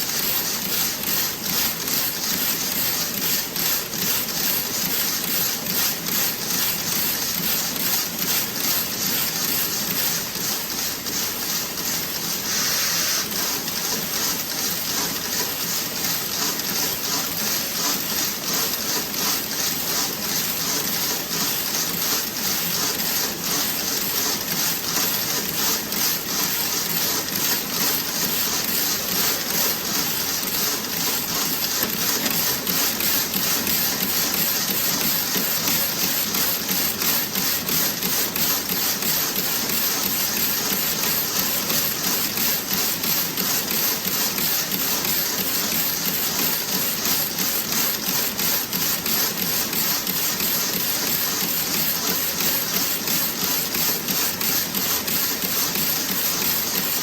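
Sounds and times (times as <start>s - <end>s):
knitting machine clatter: 0.0s - 57.0s
short hiss: 12.4s - 13.3s.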